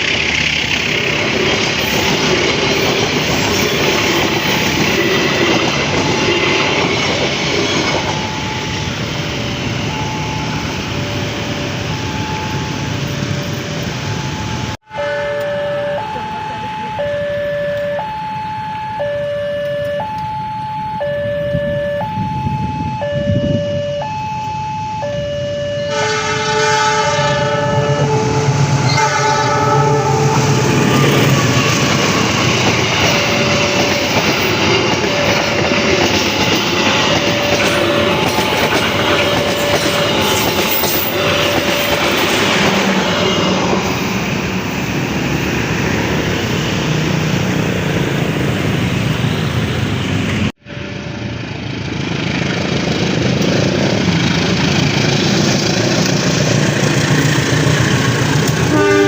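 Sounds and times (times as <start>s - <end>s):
train passing with loud rush: 0.0s - 59.0s
two-tone crossing alarm: 1.8s - 47.3s, 58.7s - 59.0s
train horn: 25.9s - 31.8s, 37.0s - 44.0s, 58.7s - 59.0s.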